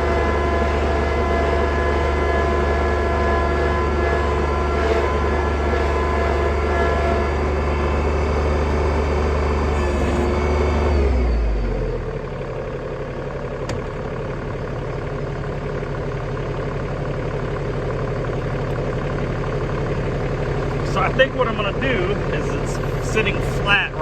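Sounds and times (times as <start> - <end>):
tractor engine running: 0.0 - 24.0.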